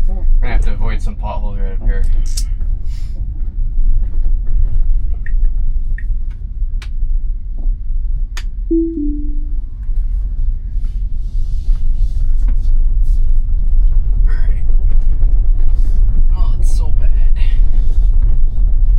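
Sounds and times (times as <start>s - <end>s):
two-note chime: 8.7s - 9.6s
road and tyre rumble in car cabin: 10.6s - 18.9s.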